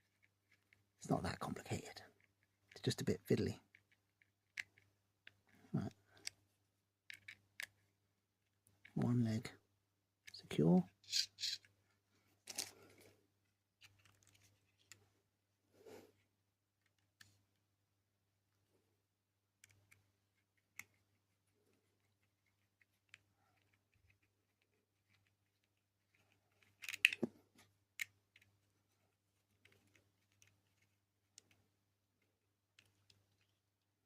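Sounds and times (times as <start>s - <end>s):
small plastic parts clicking: 3.7s - 6.4s, 7.0s - 7.8s, 13.8s - 15.0s, 19.5s - 28.6s, 29.5s - 31.6s, 32.2s - 33.8s.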